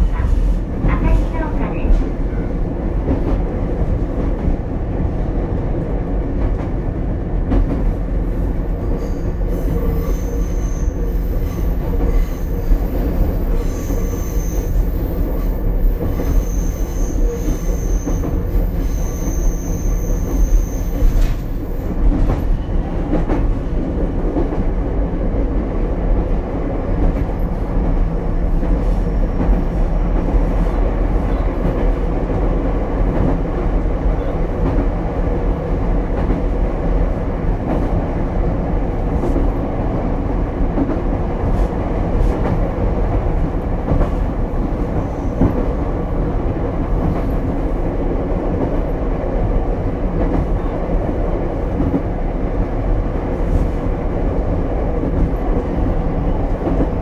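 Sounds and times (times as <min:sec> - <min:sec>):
train wheels rumbling on track: 0:00.0 - 0:57.0
high wheel squeal: 0:08.9 - 0:12.5, 0:16.3 - 0:21.2.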